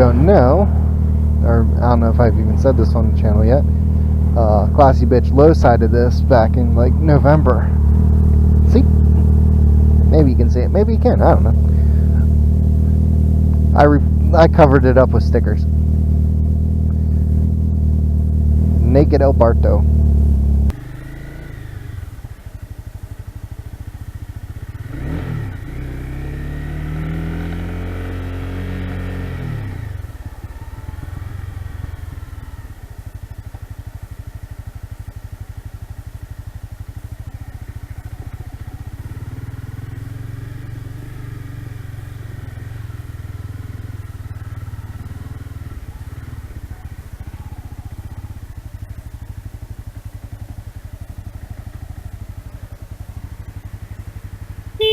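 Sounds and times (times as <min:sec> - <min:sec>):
motorcycle engine accelerating: 0:00.0 - 0:54.9.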